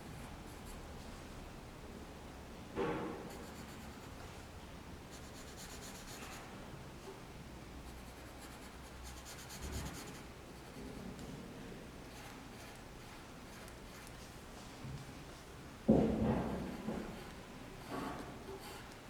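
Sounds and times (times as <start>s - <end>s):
pencil scratching on paper: 3.3s - 4.1s, 5.1s - 6.4s, 7.9s - 10.9s, 12.1s - 14.1s.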